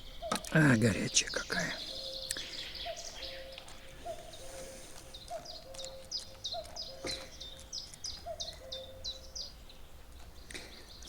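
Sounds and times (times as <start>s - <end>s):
nightingale singing: 0.0s - 11.0s.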